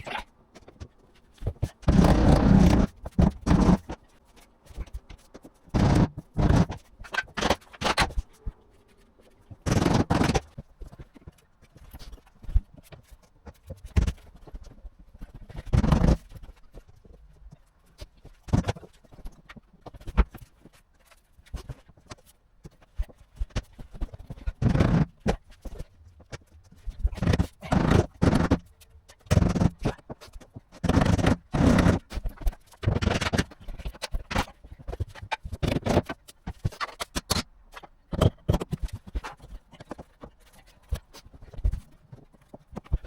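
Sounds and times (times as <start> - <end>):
floor boards scraping and knocking: 0.6 - 4.1, 21.6 - 43.0.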